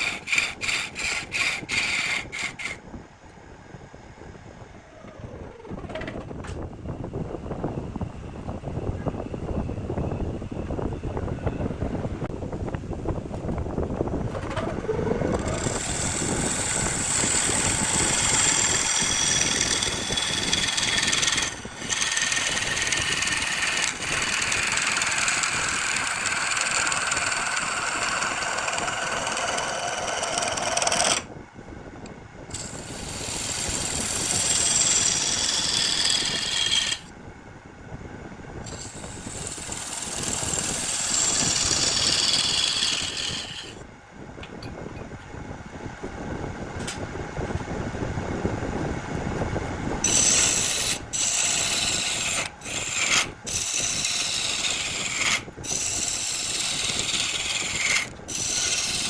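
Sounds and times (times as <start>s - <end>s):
power tool cutting wood: 0.0s - 2.8s, 15.3s - 31.3s, 32.5s - 37.1s, 38.7s - 43.8s, 50.0s - 59.0s.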